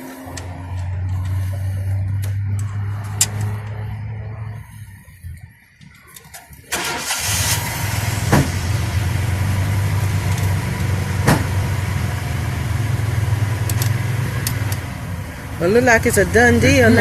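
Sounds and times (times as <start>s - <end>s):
vehicle engine idling: 0.0s - 17.0s.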